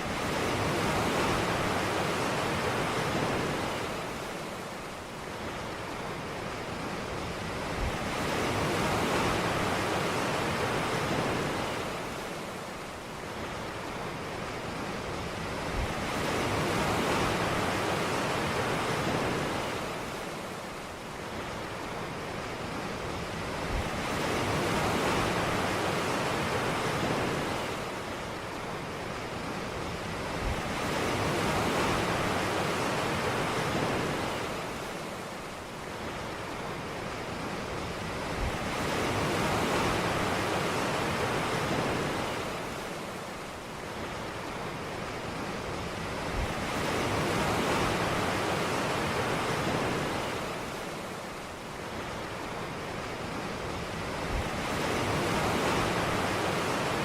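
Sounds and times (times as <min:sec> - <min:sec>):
sea waves breaking on a beach: 0:00.0 - 0:57.0.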